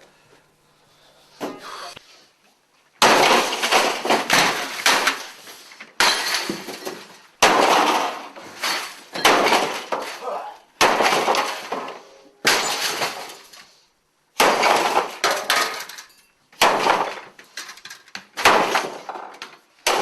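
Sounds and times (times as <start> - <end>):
sledgehammer smashing printer: 3.0 - 10.2, 10.8 - 13.5, 14.4 - 15.9, 16.6 - 17.4, 18.3 - 20.0.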